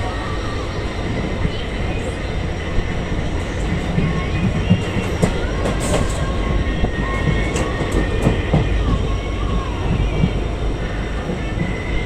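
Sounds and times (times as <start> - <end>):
train wheels rumbling on rails: 0.0 - 12.0
wheels clicking over rail joints: 2.4 - 10.6.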